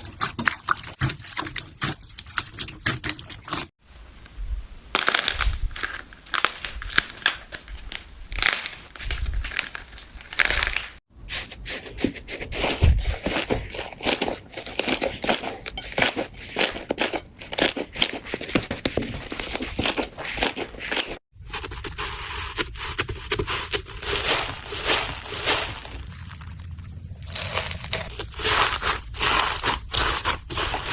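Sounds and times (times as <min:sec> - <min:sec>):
slime squeezed crackling: 0:22.8 - 0:30.9.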